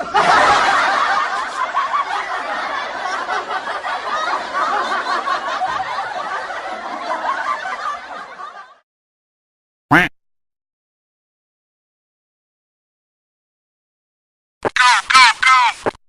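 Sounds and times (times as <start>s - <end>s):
crowd laughing: 0.0s - 8.8s
duck quack: 9.9s - 10.1s, 14.7s - 15.8s.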